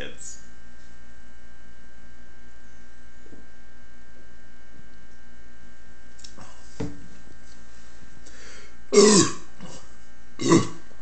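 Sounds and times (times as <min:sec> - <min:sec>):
steady electrical hum: 0:00.0 - 0:11.0
loud burp: 0:08.9 - 0:09.8, 0:10.4 - 0:10.9.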